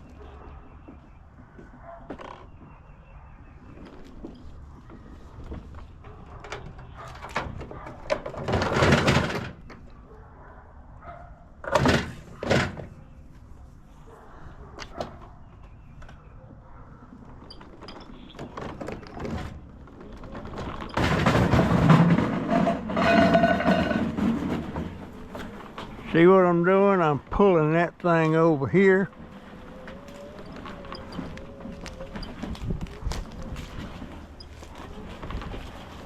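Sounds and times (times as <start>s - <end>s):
object dragged scraping ground: 21.3s - 26.2s.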